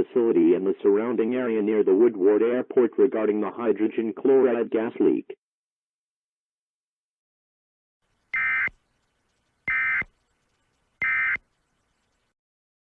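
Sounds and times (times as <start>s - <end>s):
warbling digital tone bursts: 8.4s - 8.7s.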